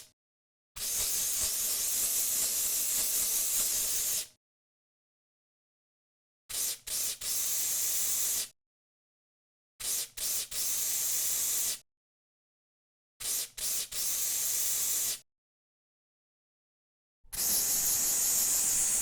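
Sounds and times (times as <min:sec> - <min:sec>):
aerosol can spraying: 0:00.8 - 0:04.3, 0:17.4 - 0:19.0.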